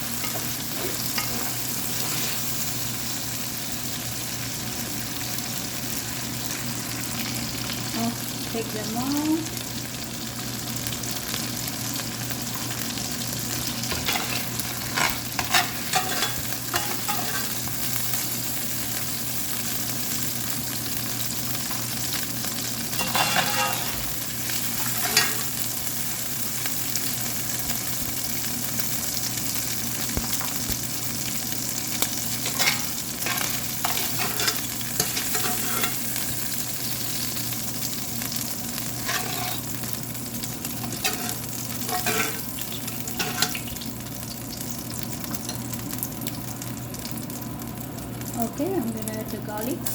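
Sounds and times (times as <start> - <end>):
oil sizzling in a pan: 0.0 - 49.9
spatula scraping a pan: 0.2 - 2.7, 13.8 - 17.8, 22.9 - 25.6, 32.0 - 36.5, 38.9 - 39.8, 40.8 - 43.7.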